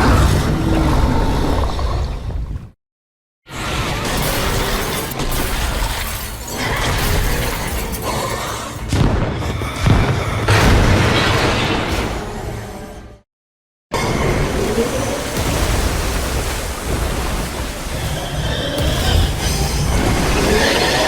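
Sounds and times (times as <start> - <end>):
monster roar with deep rumble: 0.0 - 2.7, 18.0 - 21.0
booming and crashing: 8.8 - 12.6, 14.8 - 21.0.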